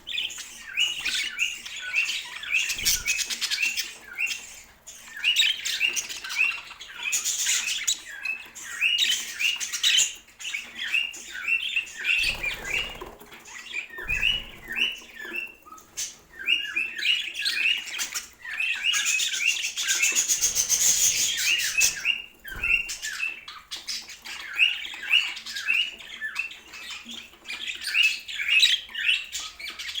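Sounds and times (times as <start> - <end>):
budgerigars chirping: 0.0 - 30.0.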